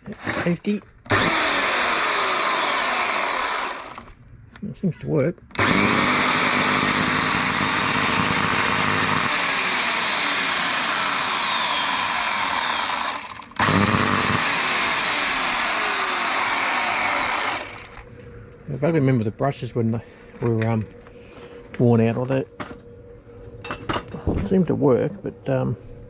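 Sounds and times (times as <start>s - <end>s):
electric chainsaw running: 1.1s - 4.1s, 5.5s - 18.1s.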